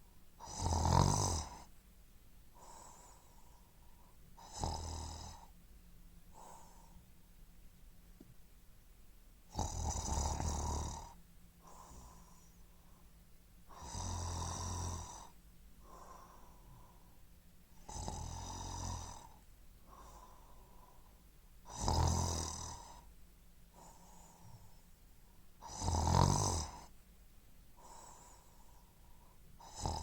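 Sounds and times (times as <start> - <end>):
loud snoring: 0.4 - 1.7, 4.4 - 5.5, 9.5 - 12.3, 13.7 - 15.4, 17.8 - 19.4, 21.7 - 23.1, 25.6 - 26.9, 29.6 - 30.0
soft breaths: 2.5 - 5.6, 6.2 - 7.2, 9.6 - 21.8, 22.7 - 25.5, 27.7 - 30.0.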